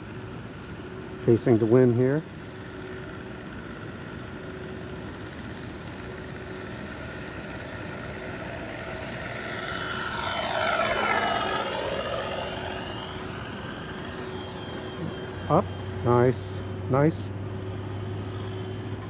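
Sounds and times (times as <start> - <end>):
model plane propeller flying past: 0.0 - 19.0
simulated engine sound from speaker: 1.2 - 2.3, 7.8 - 19.0.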